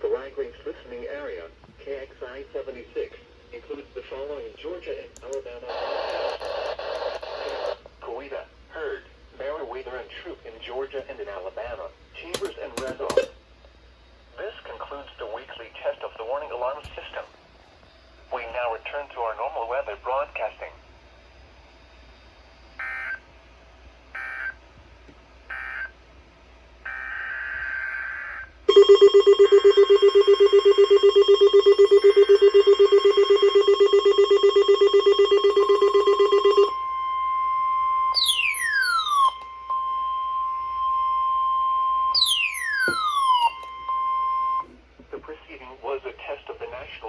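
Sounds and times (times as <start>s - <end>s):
steady high alert tone: 28.7s - 36.8s, 38.1s - 44.6s
rapidly pulsing alarm: 28.7s - 44.6s
steep falling whistles: 38.1s - 44.6s.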